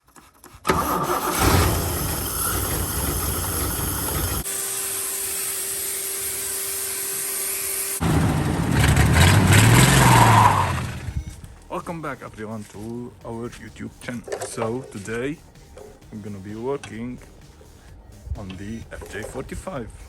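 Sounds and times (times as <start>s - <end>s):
engine revving: 0.7s - 4.4s, 8.0s - 11.5s
vehicle engine running: 1.4s - 4.4s, 8.0s - 11.7s.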